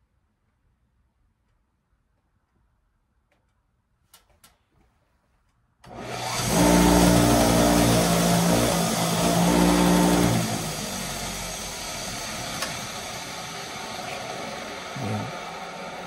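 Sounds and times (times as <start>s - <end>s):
electric tool motor humming: 5.9s - 16.0s.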